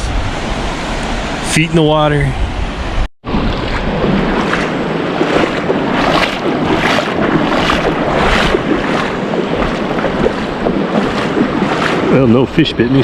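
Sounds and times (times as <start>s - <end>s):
wind buffeting microphone: 0.0s - 13.0s
small waves lapping: 3.2s - 13.0s.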